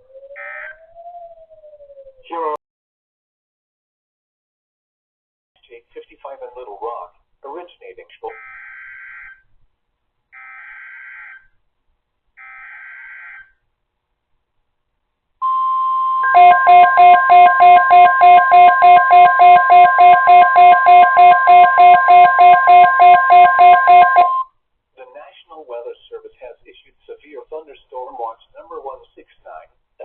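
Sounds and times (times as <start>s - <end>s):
rapid multi-tone beeping: 15.4s - 24.4s
steady alert tone: 15.4s - 24.4s.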